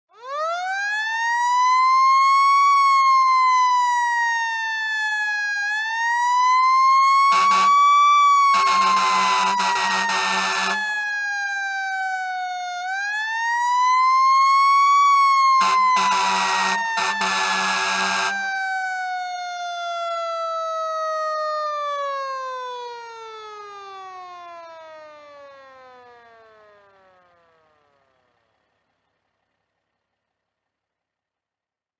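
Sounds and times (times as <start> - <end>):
fire truck siren wailing: 0.1 - 28.1
truck horn blasts: 7.3 - 11.0, 15.6 - 18.5.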